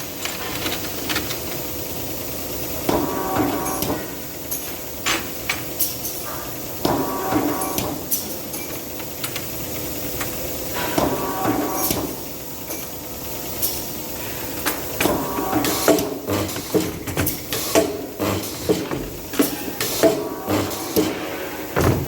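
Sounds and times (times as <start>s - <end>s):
factory machinery hissing: 0.0s - 22.0s
metallic clanks and knocks: 14.6s - 22.0s.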